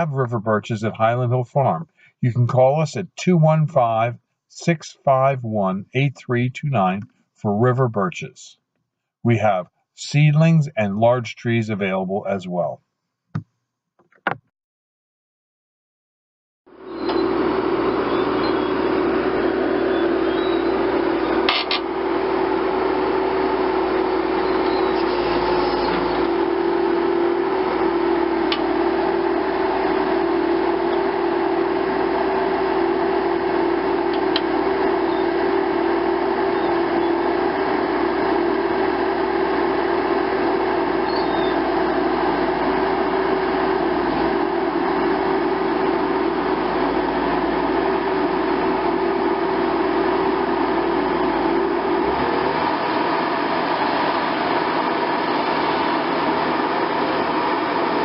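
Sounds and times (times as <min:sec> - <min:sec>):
mechanical drone with low hum: 0:16.8 - 0:58.0.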